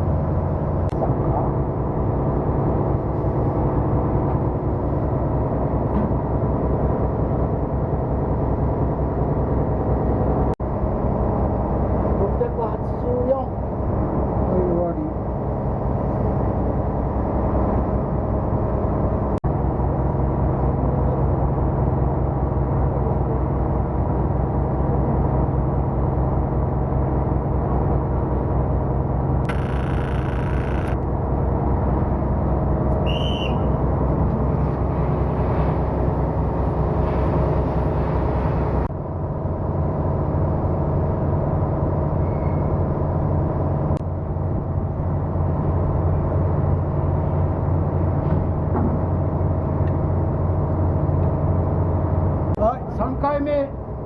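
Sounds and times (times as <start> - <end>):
ship diesel machinery drone: 0.0 - 54.0
brief high whistle: 33.0 - 33.8.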